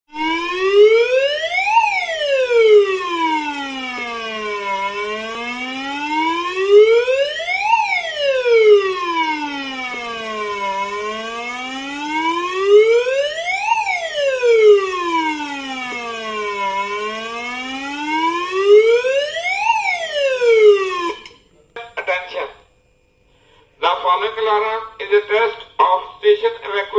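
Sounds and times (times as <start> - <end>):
warning siren wailing: 0.1 - 21.4.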